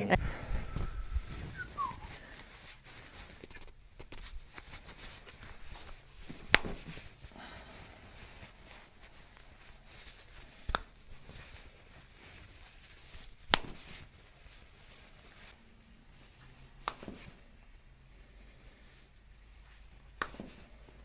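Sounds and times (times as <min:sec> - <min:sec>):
faint rustling: 0:00.0 - 0:21.0.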